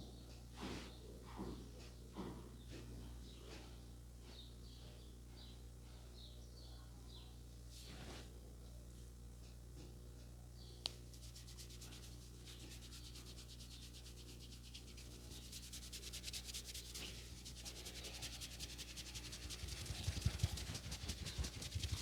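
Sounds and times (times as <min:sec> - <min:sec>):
hands rubbing over hair: 0:10.9 - 0:22.0.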